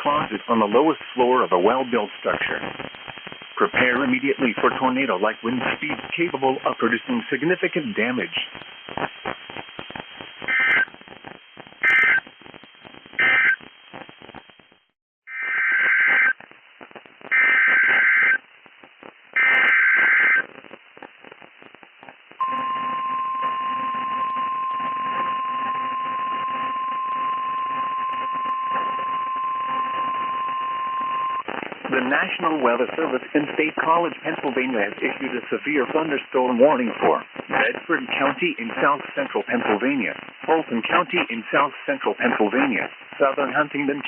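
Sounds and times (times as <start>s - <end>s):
radio hiss: 0.0s - 44.0s
buzzing data bursts: 9.9s - 12.4s, 13.1s - 14.6s, 17.3s - 18.4s, 19.4s - 20.5s
steady warning alarm tone: 22.4s - 31.4s.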